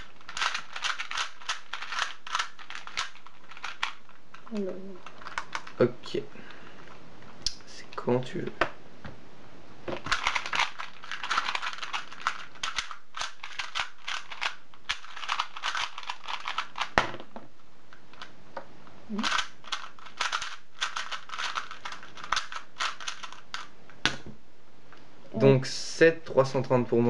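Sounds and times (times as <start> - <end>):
plastic puzzle cube clicking: 0.0 - 5.8, 10.0 - 17.0, 19.2 - 24.1.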